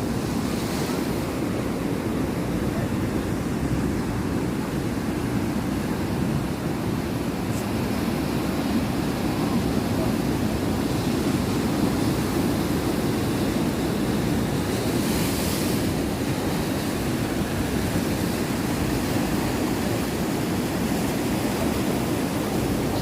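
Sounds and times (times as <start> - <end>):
sea surf washing on shore: 0.0 - 23.0
wave breaking: 0.0 - 23.0.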